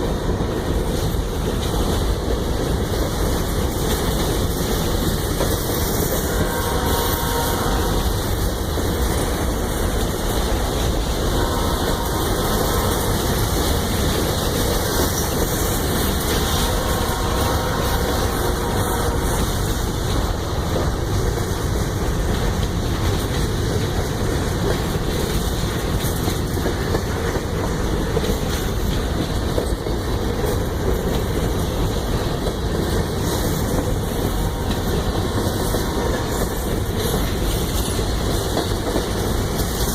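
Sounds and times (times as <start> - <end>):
train wheels on rails: 0.0 - 39.9.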